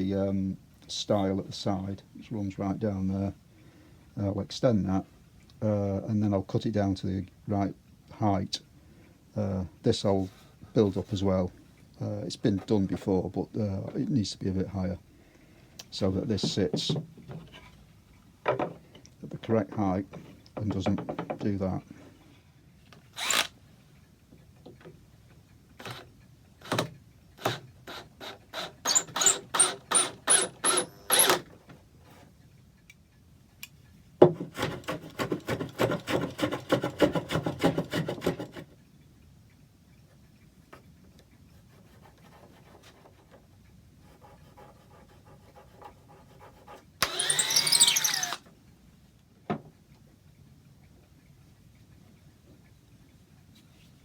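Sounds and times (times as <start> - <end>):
drill whirr: 23.2 - 23.5, 27.4 - 31.4, 47.0 - 48.4.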